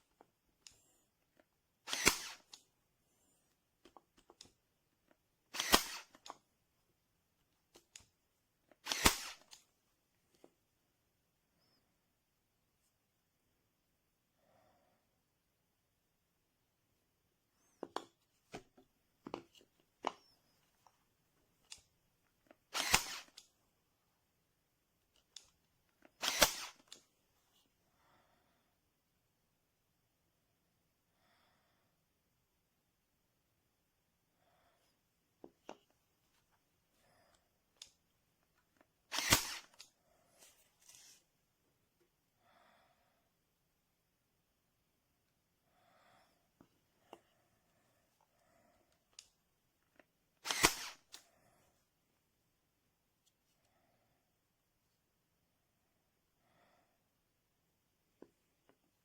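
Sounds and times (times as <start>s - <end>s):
staple gun firing burst: 1.9s - 2.4s, 5.6s - 6.2s, 8.8s - 9.5s, 22.8s - 23.4s, 26.2s - 26.8s, 39.1s - 39.8s, 50.4s - 51.0s
staple gun firing snap: 39.1s - 39.8s, 50.4s - 51.0s.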